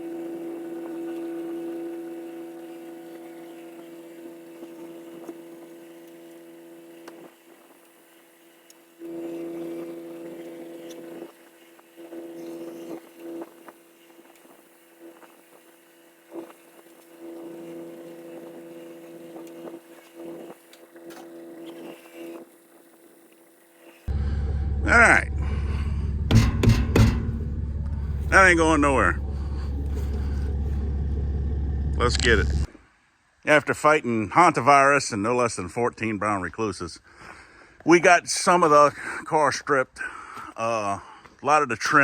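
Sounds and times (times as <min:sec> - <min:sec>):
motor humming in spurts: 0:00.0 - 0:32.7
knocks and clanks: 0:24.1 - 0:32.7.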